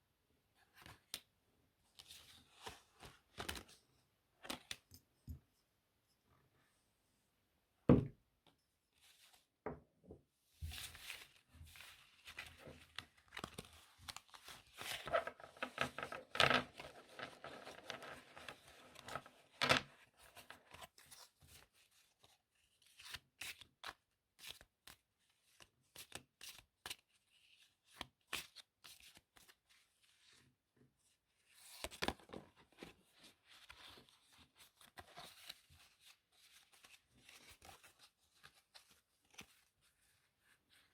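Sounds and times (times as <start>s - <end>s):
playing cards clicking and rustling: 11.8s - 21.0s, 31.6s - 32.9s.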